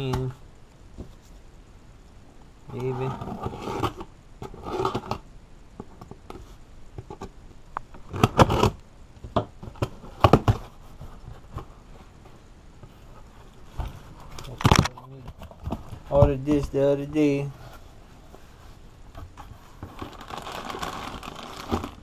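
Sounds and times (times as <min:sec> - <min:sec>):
packaging crinkling and tearing: 0:19.9 - 0:22.0.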